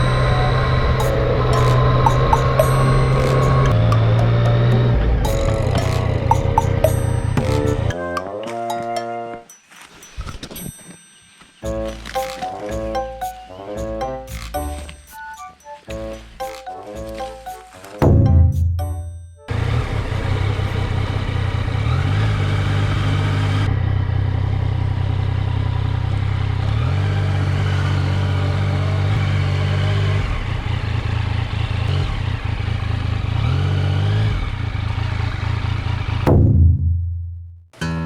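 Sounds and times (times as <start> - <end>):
motorcycle engine revving: 0.0 - 7.9, 19.5 - 36.6.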